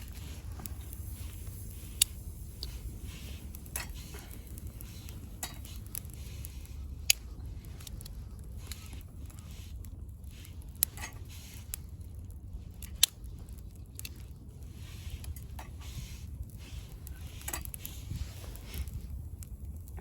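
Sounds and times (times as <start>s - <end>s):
soft hiss: 0.0s - 11.9s
sharp pops of burning wood: 0.0s - 20.0s
wood crackling in a stove: 0.0s - 20.0s.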